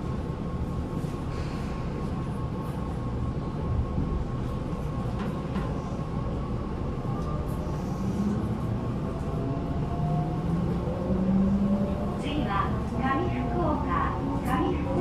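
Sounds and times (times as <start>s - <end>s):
electric train rumbling: 0.0s - 15.0s.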